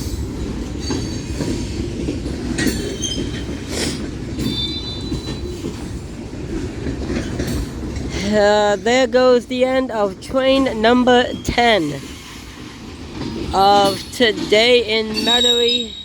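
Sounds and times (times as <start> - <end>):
rail-joint clacks: 0.0 - 16.0
steel wheels rumbling on rail: 0.0 - 16.0
high-pitched wheel squeals: 15.1 - 16.0.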